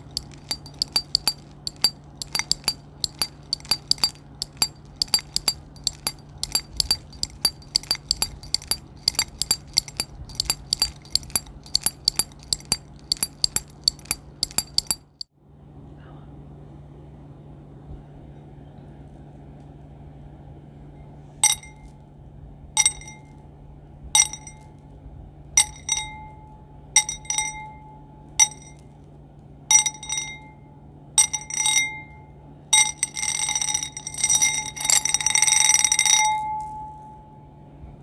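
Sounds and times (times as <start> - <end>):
dense jingling ring: 0.0 - 15.3, 21.4 - 21.9, 22.8 - 23.3, 24.2 - 24.7, 25.6 - 26.4, 27.0 - 28.8, 29.7 - 30.6, 31.2 - 32.2, 32.8 - 37.1
glassy object clinking: 0.0 - 15.3, 21.4 - 21.8, 22.8 - 23.3, 24.2 - 24.6, 25.6 - 26.2, 27.0 - 27.8, 28.4 - 28.8, 29.7 - 30.5, 31.2 - 32.1, 32.8 - 37.0.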